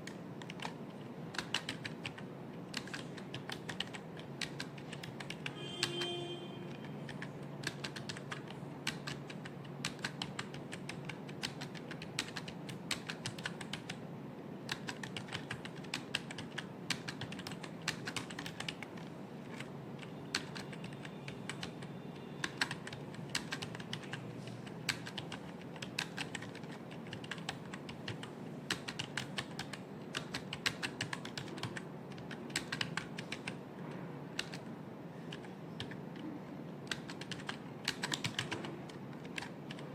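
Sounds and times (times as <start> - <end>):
computer keyboard typing: 0.0 - 14.0, 14.6 - 39.9
brief tone: 5.5 - 7.0.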